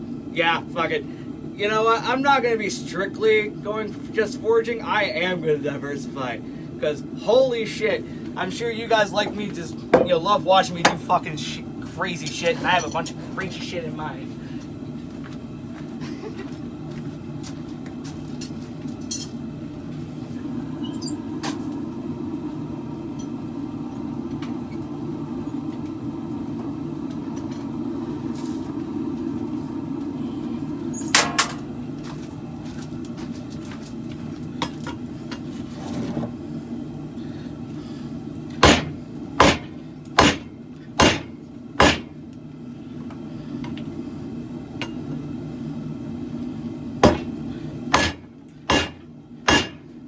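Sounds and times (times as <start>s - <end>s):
low rumble: 19.7s - 33.0s
hammer striking metal blade: 38.6s - 42.0s, 48.0s - 49.8s.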